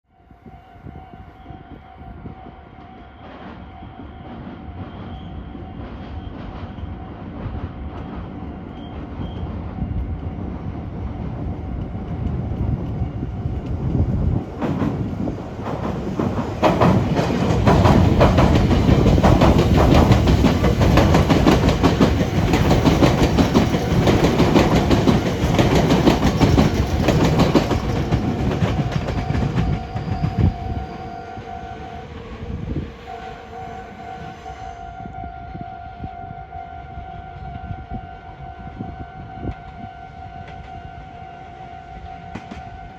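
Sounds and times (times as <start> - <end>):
electric train approaching: 0.1 - 42.9
train wheels clickety-clack: 2.4 - 31.5, 42.2 - 42.9.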